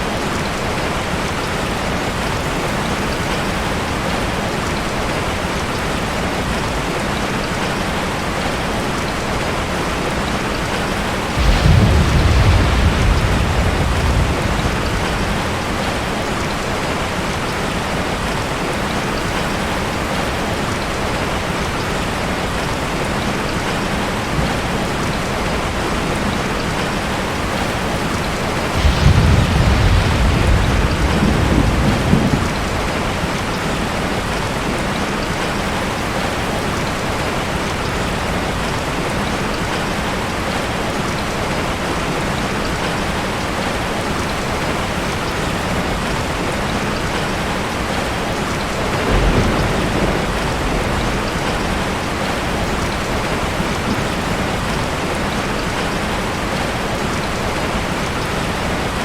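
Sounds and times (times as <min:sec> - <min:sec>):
heavy rain: 0:00.0 - 0:59.0
rolling thunder: 0:09.4 - 0:20.1, 0:24.3 - 0:37.5, 0:48.7 - 0:55.1.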